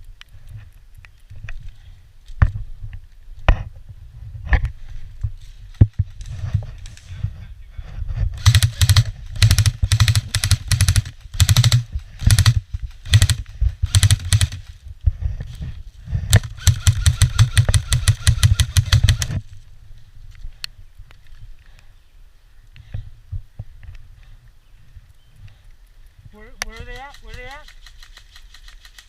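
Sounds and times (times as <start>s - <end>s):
airsoft guns firing bursts: 8.4s - 14.8s, 16.3s - 19.4s, 26.7s - 29.0s.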